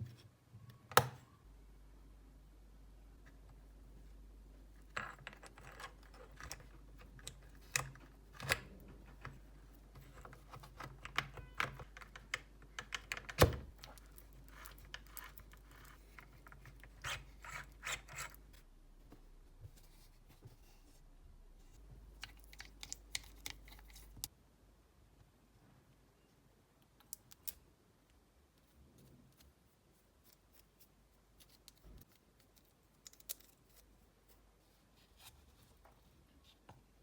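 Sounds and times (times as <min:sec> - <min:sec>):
tools and parts clicking: 0:04.8 - 0:09.4.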